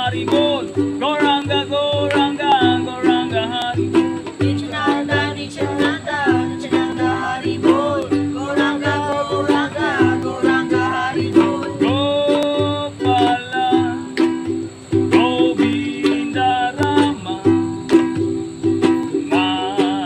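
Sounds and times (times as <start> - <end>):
strummed string instrument: 0.0 - 20.0
person singing a mantra: 4.4 - 14.1.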